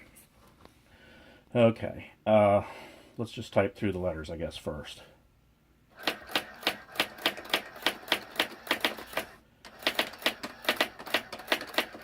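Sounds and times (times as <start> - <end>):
electronic typewriter printing: 5.9 - 12.0.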